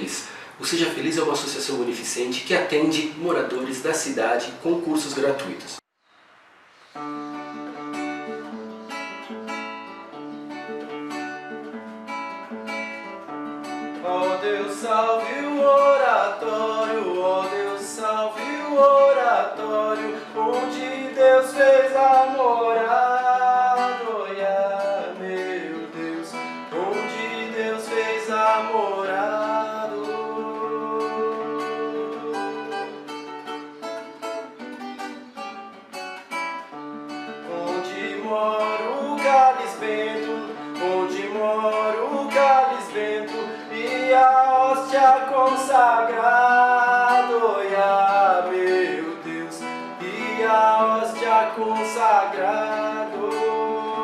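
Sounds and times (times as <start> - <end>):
acoustic guitar strumming: 6.5 - 54.0
person singing: 13.9 - 33.6, 37.4 - 54.0.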